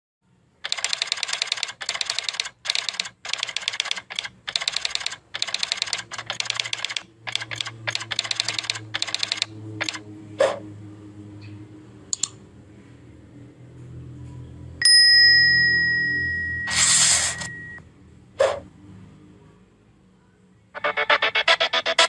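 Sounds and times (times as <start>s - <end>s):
sharp click: 0.7s - 10.0s, 12.1s - 12.4s.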